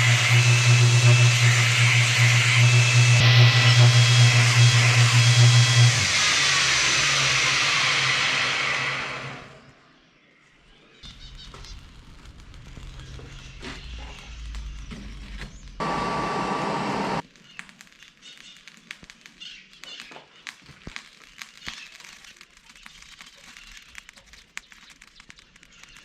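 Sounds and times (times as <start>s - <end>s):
power tool motor whine: 0.0s - 9.7s, 15.8s - 17.2s.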